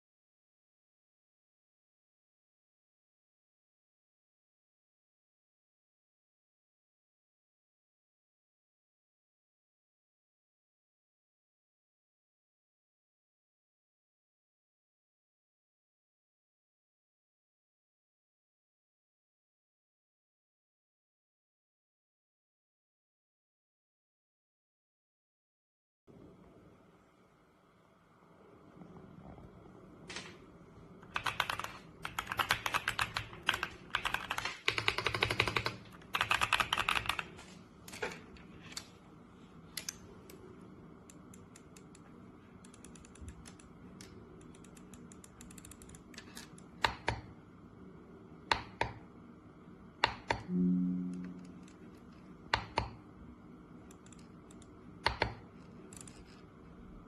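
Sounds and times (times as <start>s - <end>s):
mechanical keyboard typing: 31.0s - 37.4s, 42.6s - 47.2s
short low hum: 50.5s - 52.4s.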